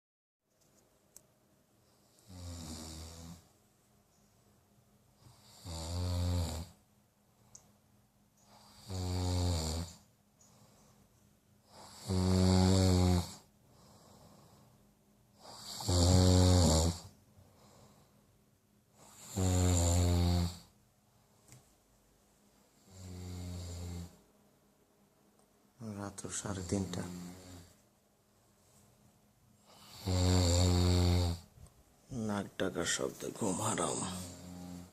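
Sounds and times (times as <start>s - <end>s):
person snoring heavily: 2.2s - 3.5s, 5.2s - 6.8s, 8.5s - 10.1s, 11.7s - 14.5s, 15.4s - 17.2s, 19.0s - 20.7s, 22.8s - 24.2s, 26.5s - 27.8s, 29.6s - 31.5s, 33.4s - 34.9s.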